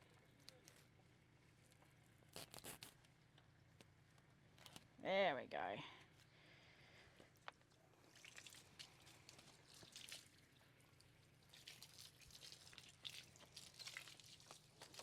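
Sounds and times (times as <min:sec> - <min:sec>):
hose water splashing and dripping: 0:08.0 - 0:15.0.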